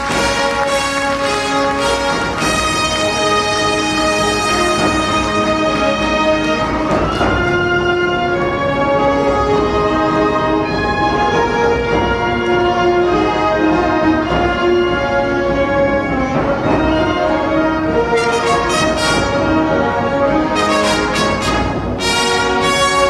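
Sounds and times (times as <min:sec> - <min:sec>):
short accented brass notes: 0:00.0 - 0:08.8, 0:18.1 - 0:19.7, 0:20.5 - 0:23.0
brass sustained notes: 0:00.0 - 0:23.0
orchestral music: 0:00.0 - 0:23.0.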